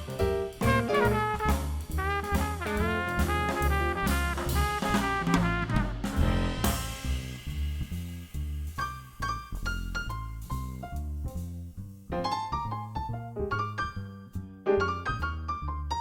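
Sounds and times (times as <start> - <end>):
jazz band playing: 0.0 - 13.0
horn soloing: 0.6 - 6.7.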